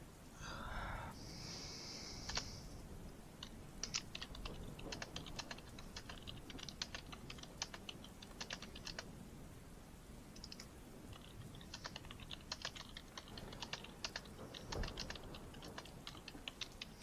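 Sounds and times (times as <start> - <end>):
keyboard typing: 2.3 - 2.5, 3.4 - 9.1, 10.4 - 17.0.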